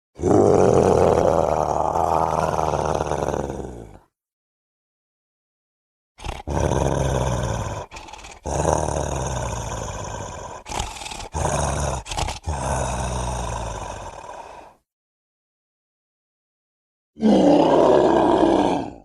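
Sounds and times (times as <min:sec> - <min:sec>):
giant creature roaring: 0:00.2 - 0:04.1, 0:06.2 - 0:14.8, 0:17.2 - 0:19.0.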